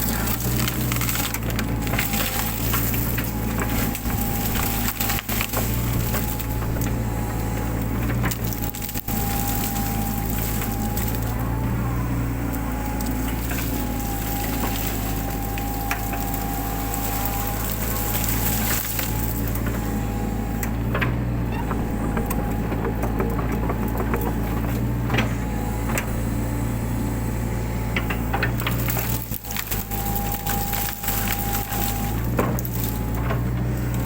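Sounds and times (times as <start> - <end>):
excavator diesel engine whining: 0.0 - 34.0
undergrowth cracking and snapping: 0.0 - 34.0.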